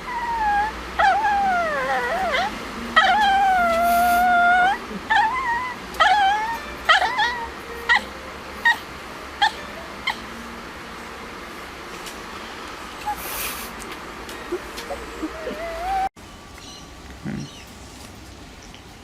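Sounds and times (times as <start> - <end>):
pet animal whining and yelping: 0.0 - 10.3, 13.0 - 13.5, 14.4 - 16.1.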